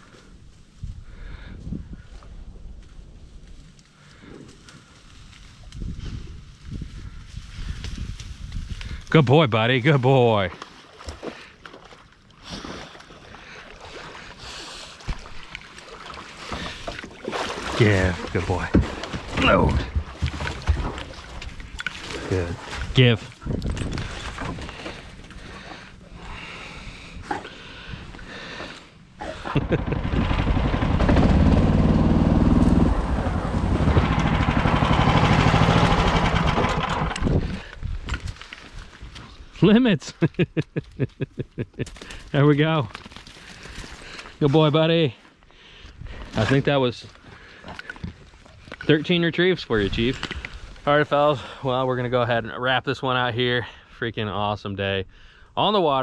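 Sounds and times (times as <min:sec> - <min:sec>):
water sloshing and splashing: 0:10.3 - 0:26.3
engine running loud: 0:29.5 - 0:37.6.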